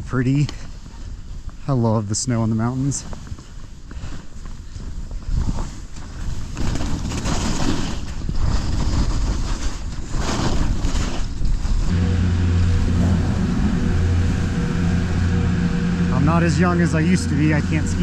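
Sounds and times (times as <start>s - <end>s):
skis scraping through snow: 4.0s - 11.9s
wind on microphone: 4.9s - 18.0s
low mechanical hum: 11.8s - 18.0s.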